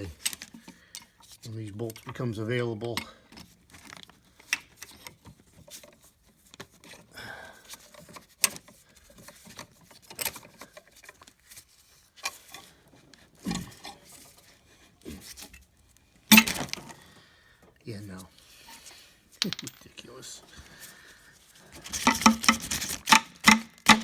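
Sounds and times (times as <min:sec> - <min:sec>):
hand tools clinking on metal: 0:00.0 - 0:05.8, 0:16.3 - 0:17.1, 0:18.0 - 0:21.1, 0:21.7 - 0:24.0.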